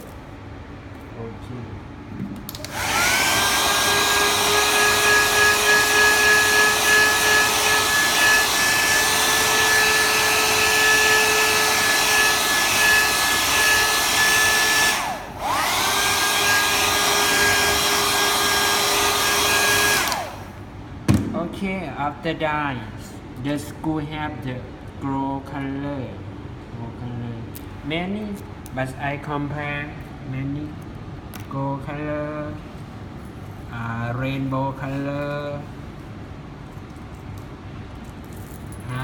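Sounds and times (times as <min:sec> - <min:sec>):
hot-air dryer running: 0:02.2 - 0:20.7.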